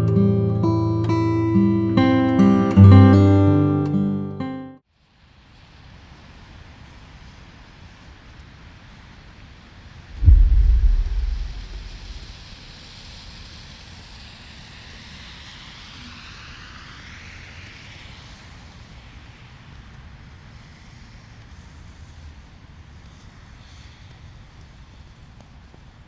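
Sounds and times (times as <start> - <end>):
vehicle tyres hissing by: 12.0 - 25.7.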